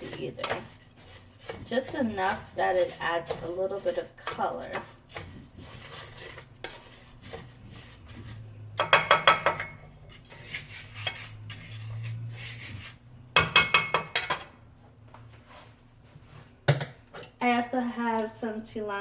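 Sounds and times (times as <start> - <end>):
rice frying in oil: 0.0 - 9.4
utensil scraping a pot: 0.0 - 14.3, 15.4 - 16.5.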